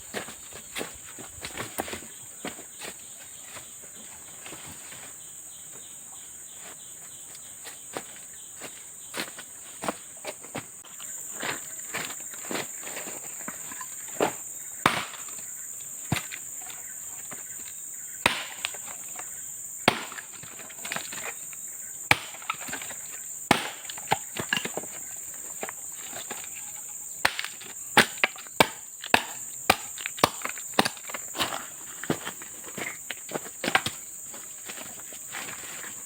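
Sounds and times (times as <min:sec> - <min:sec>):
chopping wood: 0:13.8 - 0:15.5, 0:16.1 - 0:16.4, 0:18.2 - 0:21.3, 0:22.1 - 0:25.0, 0:27.2 - 0:32.3, 0:33.3 - 0:34.1.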